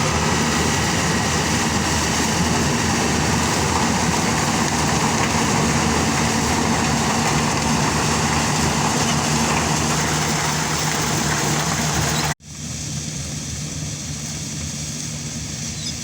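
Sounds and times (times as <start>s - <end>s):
harvesting machine running: 0.0s - 12.4s.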